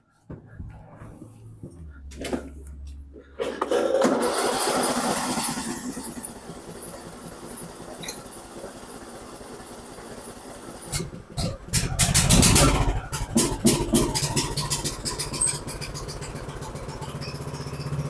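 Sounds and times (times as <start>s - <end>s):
mower engine running: 1.8s - 18.0s
electric starter cranking engine: 3.4s - 18.0s.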